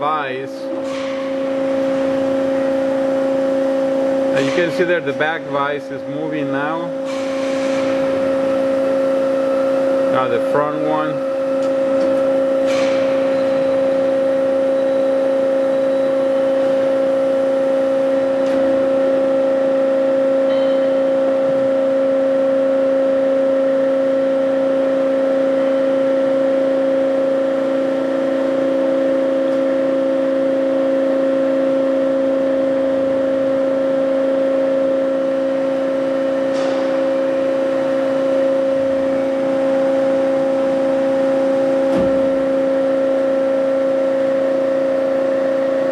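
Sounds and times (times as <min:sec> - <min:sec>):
band saw whine: 0:00.0 - 0:45.9.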